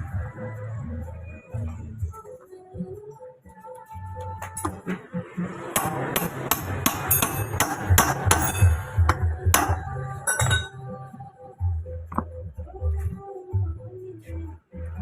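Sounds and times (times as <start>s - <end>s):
background music: 0.0s - 15.0s
hammer strikes: 5.6s - 10.8s.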